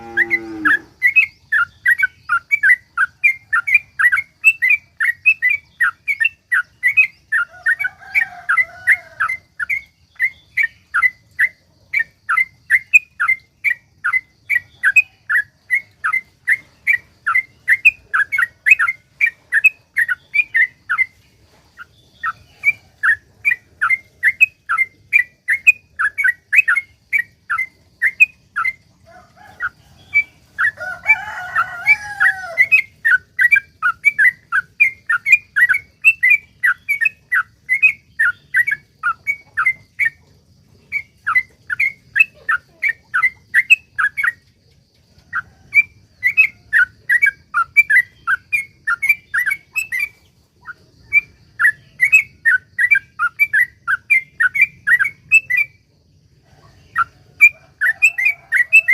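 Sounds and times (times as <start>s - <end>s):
bird chattering song: 0.0s - 58.9s.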